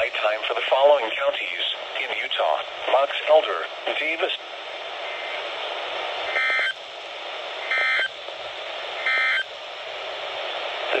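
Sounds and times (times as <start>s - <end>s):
weather radio static: 0.0s - 9.6s
buzzy data bursts: 6.3s - 6.8s, 7.6s - 8.2s, 9.0s - 9.5s.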